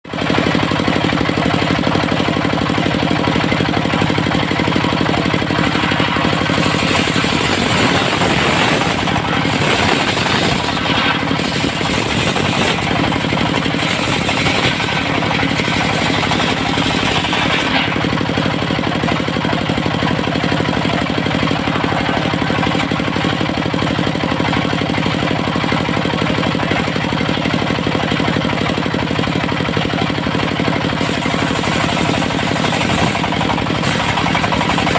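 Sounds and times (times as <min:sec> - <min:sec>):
diesel engine knocking: 0:00.0 - 0:34.9
saw blade cutting wood: 0:00.1 - 0:29.0, 0:30.0 - 0:34.9.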